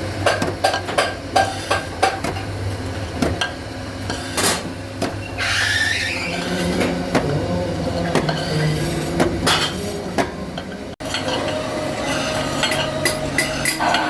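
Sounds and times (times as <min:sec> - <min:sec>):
machine hum: 0:00.0 - 0:14.0
hissing grinding sound: 0:05.2 - 0:10.1, 0:11.0 - 0:14.0.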